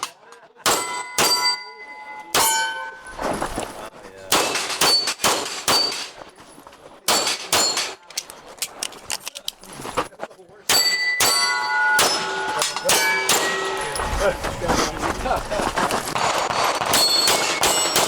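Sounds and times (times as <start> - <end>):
pistol shots: 0.6 - 1.6, 4.2 - 6.2, 7.1 - 8.1, 10.7 - 14.0, 16.2 - 18.0
steel target ringing: 0.7 - 3.3, 4.4 - 6.2, 7.1 - 8.0, 10.7 - 14.4, 16.9 - 18.0.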